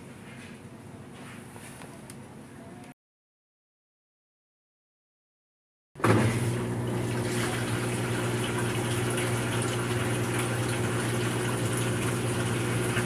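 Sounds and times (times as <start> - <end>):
washer drain pump humming: 6.0 - 13.0
water rushing: 6.6 - 13.0.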